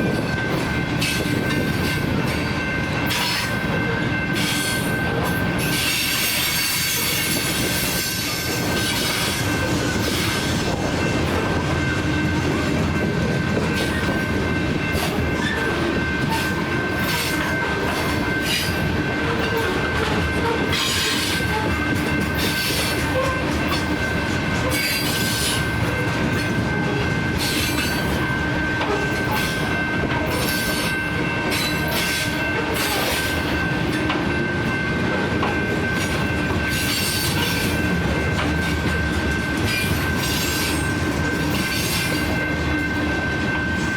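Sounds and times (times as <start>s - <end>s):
high wheel squeal: 39.6s - 42.4s.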